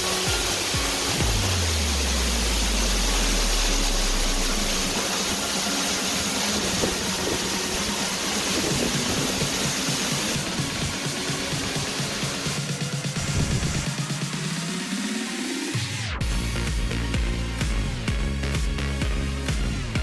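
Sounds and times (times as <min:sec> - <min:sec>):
waterfall roaring: 0:00.0 - 0:14.0.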